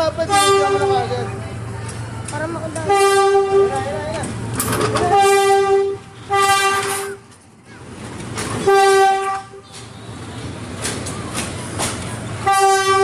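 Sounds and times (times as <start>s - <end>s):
locomotive horn blasts: 0.2s - 1.1s, 2.8s - 3.8s, 4.9s - 7.2s, 8.6s - 10.4s, 12.4s - 13.0s.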